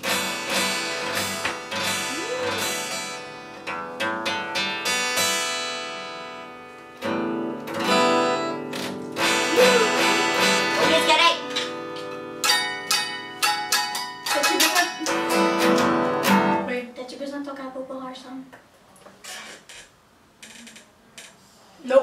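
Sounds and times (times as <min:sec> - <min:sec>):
acoustic guitar strumming chords: 0:00.0 - 0:16.7.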